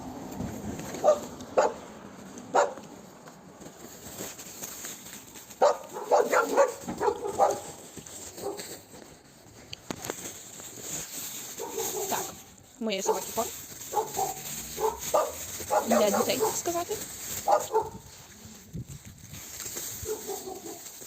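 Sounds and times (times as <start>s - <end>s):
dog barking: 1.0s - 1.8s, 2.5s - 2.8s, 5.6s - 7.8s, 8.4s - 8.7s, 11.6s - 12.4s, 13.0s - 16.8s, 17.4s - 18.1s, 20.0s - 20.9s.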